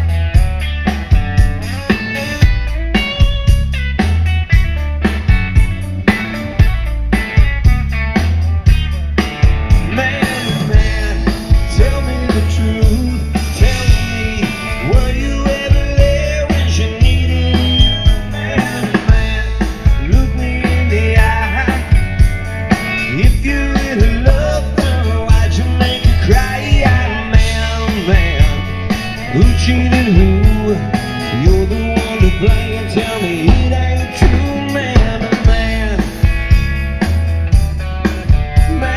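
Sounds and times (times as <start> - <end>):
bass guitar: 0.0 - 38.9
drum kit beat: 0.0 - 38.9
electric guitar: 0.0 - 38.9
person singing: 9.8 - 22.0, 23.0 - 36.3, 38.4 - 38.9.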